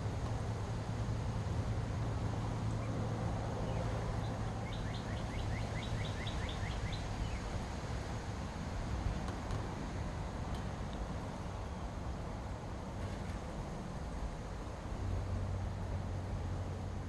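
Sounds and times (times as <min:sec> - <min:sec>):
low outdoor rumble: 0:00.0 - 0:17.0
songbird singing high notes: 0:03.6 - 0:07.5.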